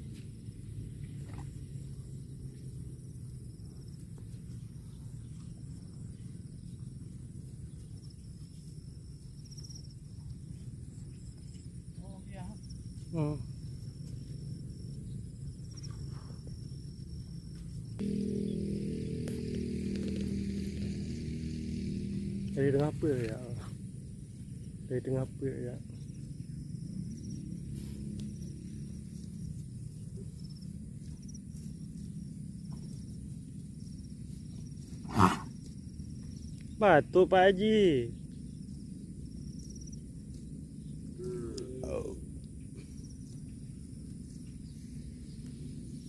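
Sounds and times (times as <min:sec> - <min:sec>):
crickets chirping: 0:00.0 - 0:46.0
high pulsing insect trill: 0:00.0 - 0:46.0
steady low hum: 0:00.0 - 0:46.0
steady low rumble: 0:00.0 - 0:46.0.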